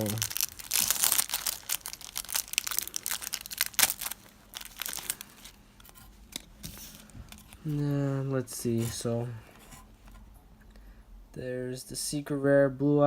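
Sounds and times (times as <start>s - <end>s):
foil wrapper tearing and crinkling: 0.0s - 7.9s.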